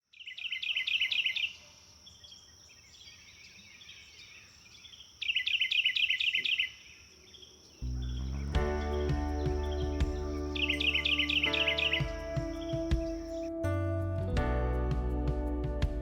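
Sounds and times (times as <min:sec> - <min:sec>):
songbird singing: 0:00.0 - 0:16.0
soft bird calls: 0:00.2 - 0:13.5
high-pitched insect hum: 0:07.8 - 0:13.6.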